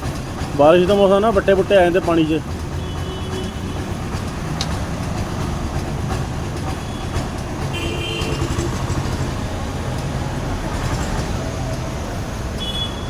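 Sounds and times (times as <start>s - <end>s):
low mechanical rumble with clatter: 0.0s - 12.8s.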